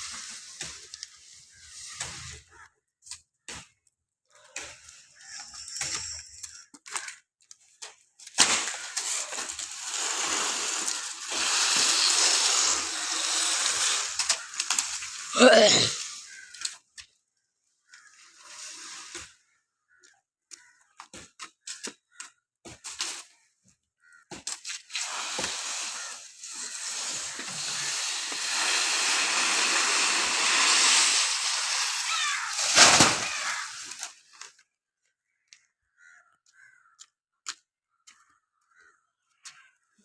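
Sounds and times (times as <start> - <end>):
palm fronds rustling swish: 8.3 - 16.6, 24.6 - 34.5
tree crashing down: 8.4 - 16.2, 25.0 - 34.2.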